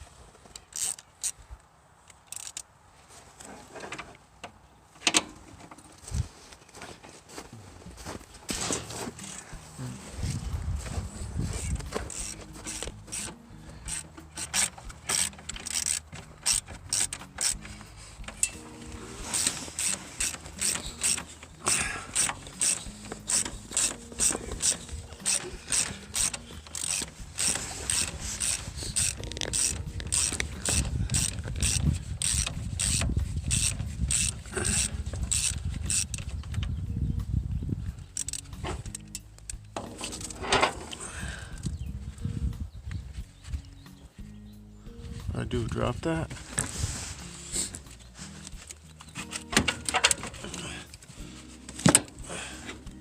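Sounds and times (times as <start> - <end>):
ratchet wrench clicking: 0.7 - 1.4, 2.1 - 2.6, 11.6 - 18.6, 19.3 - 36.4, 38.1 - 41.0.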